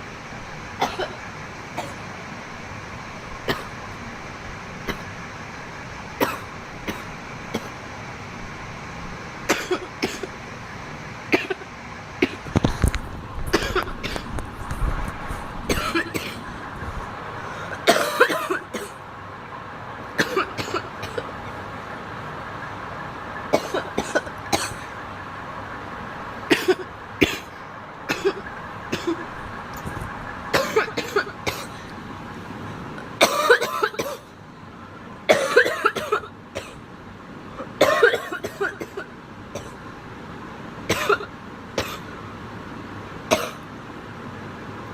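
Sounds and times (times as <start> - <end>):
young woman coughing: 0.8 - 1.2, 3.5 - 3.8, 6.2 - 7.8, 9.5 - 10.3, 11.3 - 11.6, 13.5 - 14.3, 15.7 - 16.4, 17.8 - 19.0, 20.2 - 21.3, 23.5 - 24.9, 26.5 - 27.5, 28.1 - 29.3, 30.5 - 31.8, 33.2 - 34.3, 35.3 - 36.8, 37.6 - 39.8, 40.9 - 42.1, 43.3 - 43.6.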